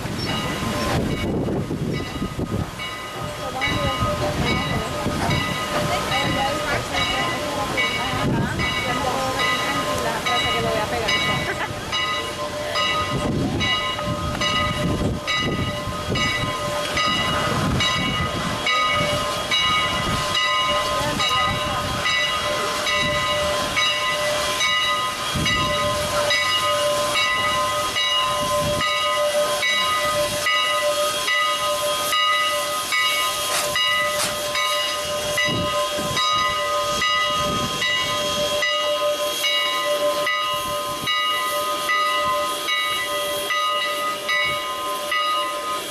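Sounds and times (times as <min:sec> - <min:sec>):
wind rumble on microphone: 0:00.0 - 0:07.1, 0:13.0 - 0:20.4
steam locomotive exhaust chuffs: 0:00.0 - 0:45.9.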